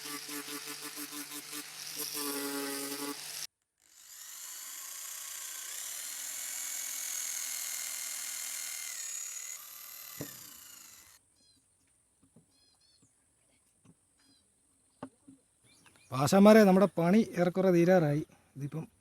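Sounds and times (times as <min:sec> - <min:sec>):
power tool whining on wood: 0:00.0 - 0:11.2
faint bird chirps: 0:11.3 - 0:16.2.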